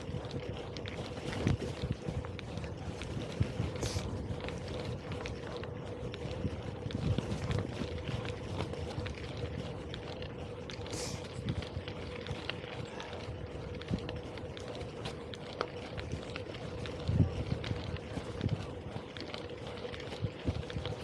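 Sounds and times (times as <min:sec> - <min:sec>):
wind on microphone: 0:00.0 - 0:09.9, 0:16.0 - 0:19.1
small rattles and clicks: 0:00.0 - 0:21.0
steady hum: 0:00.0 - 0:21.0.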